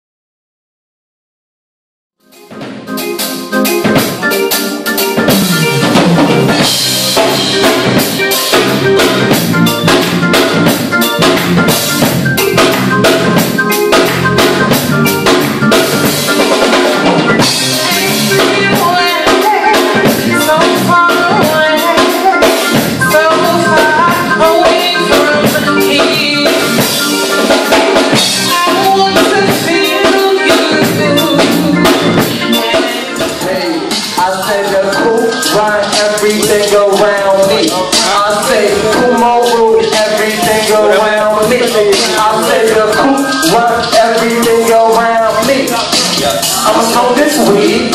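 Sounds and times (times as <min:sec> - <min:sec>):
instrumental music with drum kit: 0:02.2 - 0:47.9.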